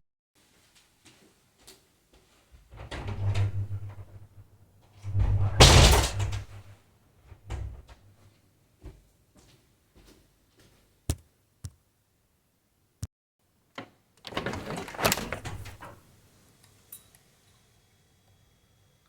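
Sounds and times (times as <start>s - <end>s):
door rattling: 2.7s - 4.4s, 5.0s - 6.7s, 7.4s - 8.0s, 14.3s - 16.0s.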